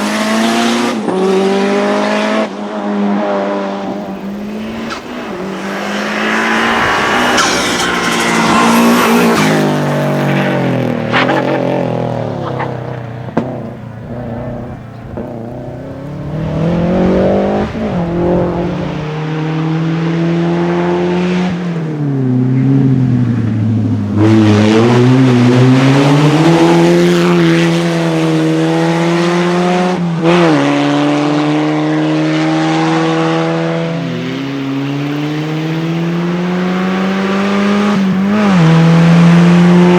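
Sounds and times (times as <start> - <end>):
racing car engine revving: 0.0 - 39.9
sharp crack: 4.8 - 9.9.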